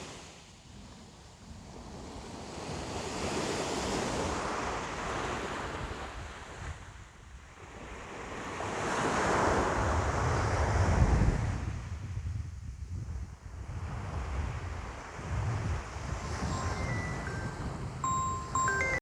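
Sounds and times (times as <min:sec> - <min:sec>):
ocean waves breaking: 0:15.9 - 0:19.0
faint chime tones: 0:16.2 - 0:19.0.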